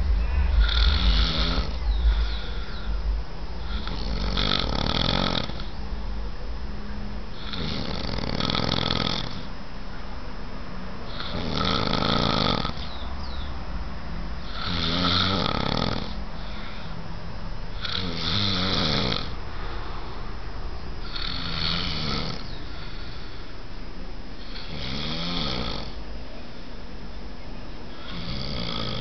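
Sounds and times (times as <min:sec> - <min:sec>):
man snoring: 0:00.5 - 0:02.9, 0:03.6 - 0:05.8, 0:07.4 - 0:09.5, 0:11.1 - 0:12.9, 0:14.4 - 0:16.7, 0:17.8 - 0:19.3, 0:21.0 - 0:23.5, 0:24.4 - 0:26.0, 0:28.0 - 0:29.0.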